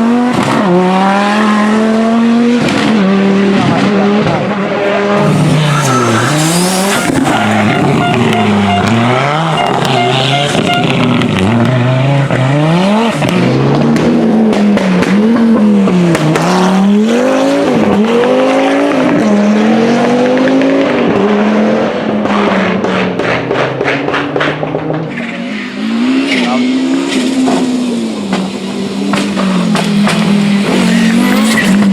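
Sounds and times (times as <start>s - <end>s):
rally car engine revving: 0.0s - 31.9s
sharp exhaust pops: 22.2s - 25.1s, 27.4s - 30.8s.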